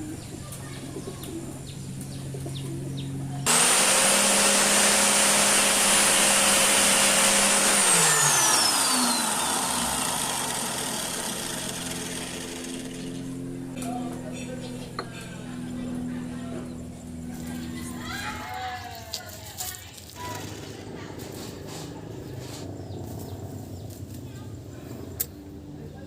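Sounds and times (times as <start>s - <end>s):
power tool motor whine: 3.4s - 13.7s.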